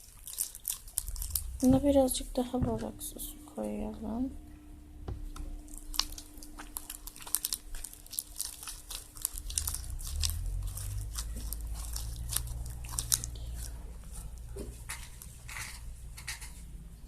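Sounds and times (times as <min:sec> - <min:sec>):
slime being mixed: 0:00.0 - 0:04.3, 0:05.2 - 0:16.7
low steady rumble: 0:00.0 - 0:17.0.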